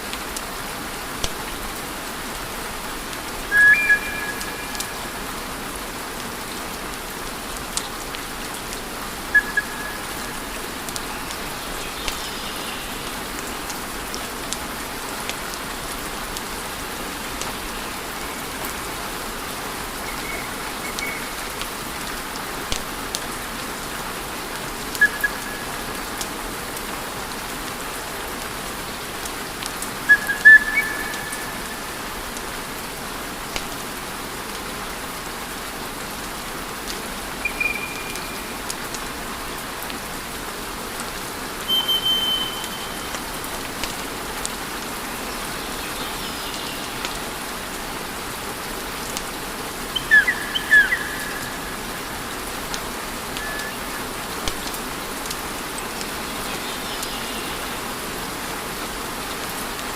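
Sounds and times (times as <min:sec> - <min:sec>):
high whistles from burning logs: 0:03.5 - 0:04.9, 0:09.3 - 0:10.1, 0:30.1 - 0:31.5, 0:37.4 - 0:38.5, 0:41.7 - 0:43.2, 0:53.4 - 0:53.8.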